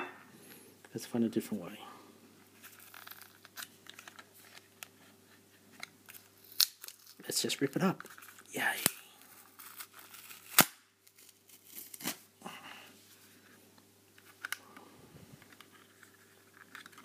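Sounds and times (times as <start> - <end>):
packaging ripping and crinkling: 2.6 - 4.7, 6.0 - 12.3, 15.6 - 17.0.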